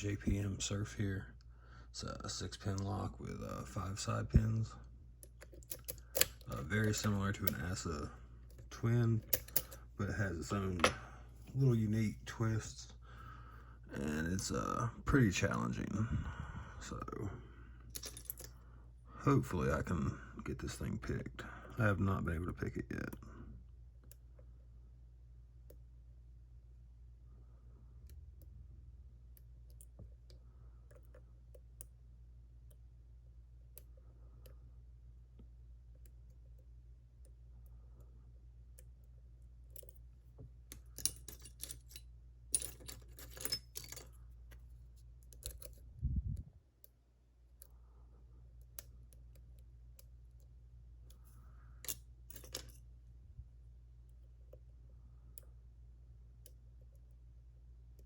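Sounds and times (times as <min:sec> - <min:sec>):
steady low hum: 0:00.0 - 0:58.0
lock pick metallic clicks: 0:05.2 - 0:07.6, 0:09.3 - 0:09.8.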